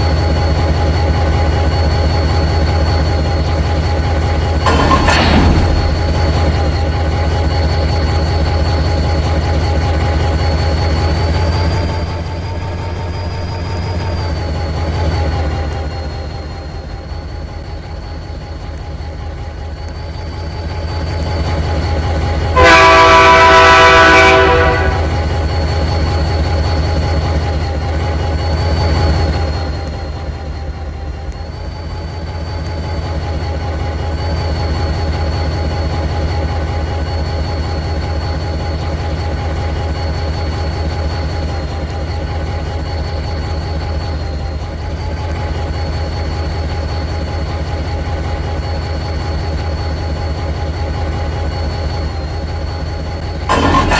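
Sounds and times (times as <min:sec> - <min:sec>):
diesel locomotive rumbling: 0:00.0 - 0:53.9
locomotive air horn blast: 0:22.6 - 0:25.3.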